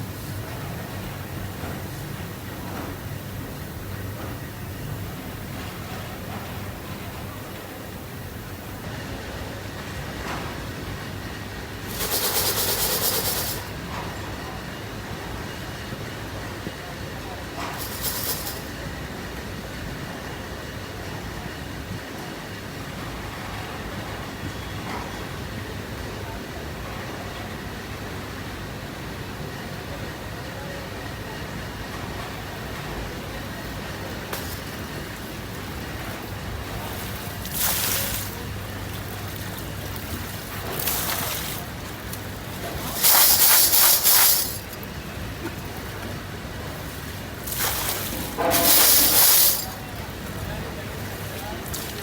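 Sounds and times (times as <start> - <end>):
factory machinery hum: 0.0 - 52.0
loud hissing bursts: 11.8 - 13.7, 17.8 - 18.8, 34.2 - 52.0.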